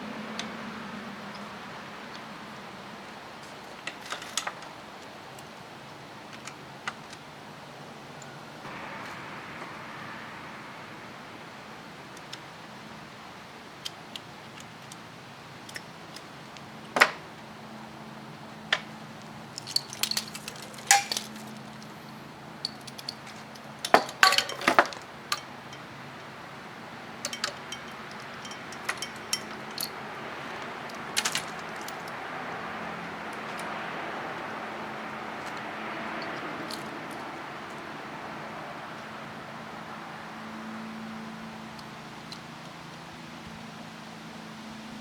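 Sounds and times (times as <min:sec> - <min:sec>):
faint steady hum: 0:07.2 - 0:32.3
small metal objects clinking: 0:19.6 - 0:21.9, 0:22.6 - 0:25.8, 0:27.2 - 0:30.0.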